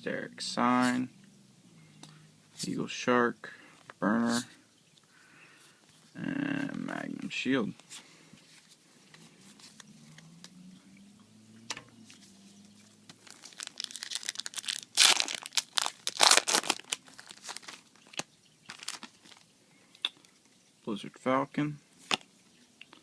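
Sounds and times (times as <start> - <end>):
soft rustles and clicks: 5.8 - 10.6
foil pack tearing and crinkling: 13.2 - 19.4.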